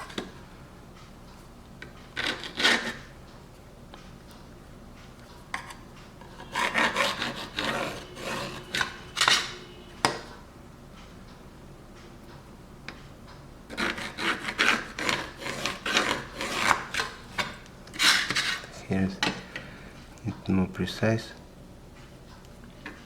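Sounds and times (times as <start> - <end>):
marking tool scratching: 2.2 - 3.1, 6.2 - 9.6, 13.7 - 17.2.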